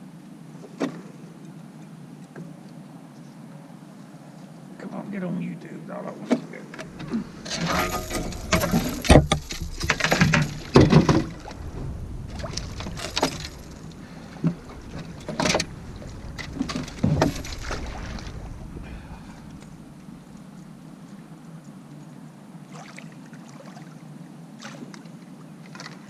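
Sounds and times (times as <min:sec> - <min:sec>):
fish splashing in water: 0:06.8 - 0:21.4.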